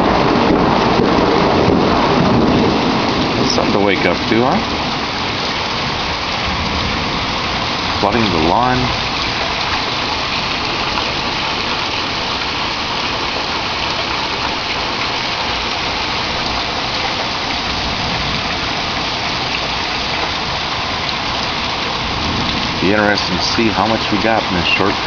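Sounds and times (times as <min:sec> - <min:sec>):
heavy rain pouring: 0:00.0 - 0:25.0.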